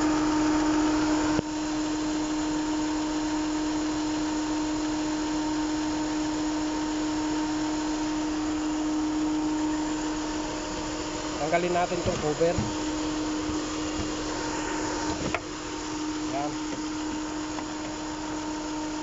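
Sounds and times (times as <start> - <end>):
car engine idling rough: 7.5 - 19.0.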